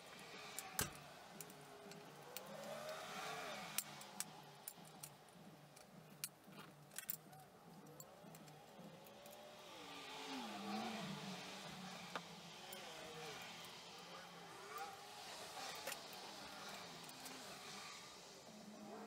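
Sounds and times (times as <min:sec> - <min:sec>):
small metal parts clicking: 0:00.0 - 0:09.7, 0:11.0 - 0:18.0
faint vehicle engine: 0:00.0 - 0:19.0.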